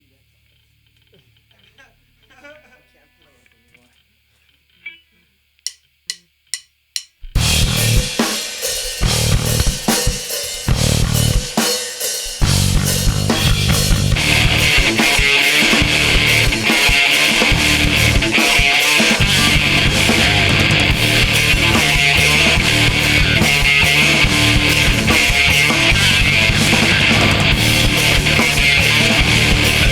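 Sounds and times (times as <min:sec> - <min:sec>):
live rock band playing: 0:12.4 - 0:29.9.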